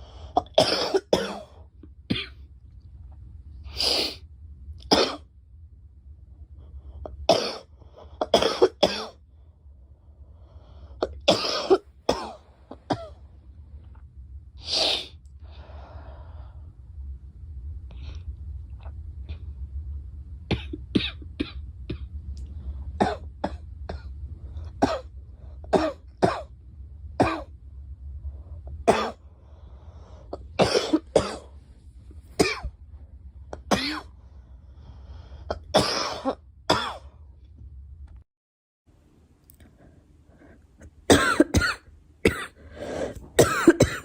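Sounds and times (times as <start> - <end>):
low steady hum: 0.0 - 38.2, 38.9 - 44.0
girl coughing: 0.4 - 2.4, 7.3 - 9.2, 11.0 - 13.2, 30.6 - 31.5, 32.4 - 32.7, 35.5 - 37.0, 41.1 - 42.6, 43.4 - 44.0.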